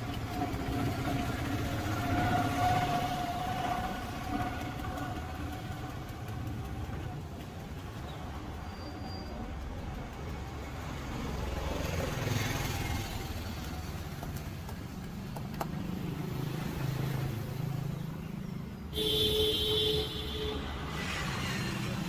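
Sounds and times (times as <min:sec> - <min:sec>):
street traffic rumble: 0:00.0 - 0:22.0
vehicle horn: 0:18.9 - 0:21.0.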